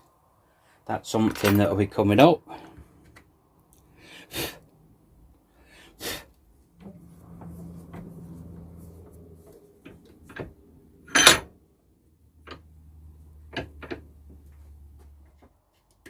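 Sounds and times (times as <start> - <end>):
low hum: 6.5 - 11.2.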